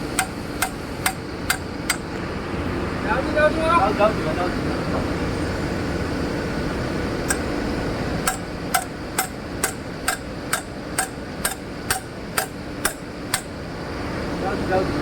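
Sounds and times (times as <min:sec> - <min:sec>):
steady machinery noise: 0:00.0 - 0:15.0
hammer tapping on metal: 0:00.2 - 0:02.2, 0:08.2 - 0:13.5.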